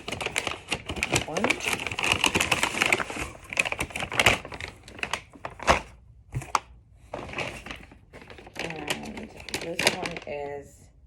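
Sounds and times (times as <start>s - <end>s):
packaging rustling and crackling: 0.0s - 10.6s.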